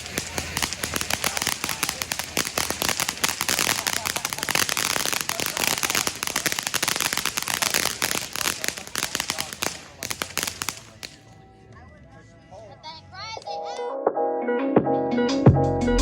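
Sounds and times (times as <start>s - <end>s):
hiss of spark spray: 0.0s - 11.2s
firework crackling: 0.0s - 11.5s.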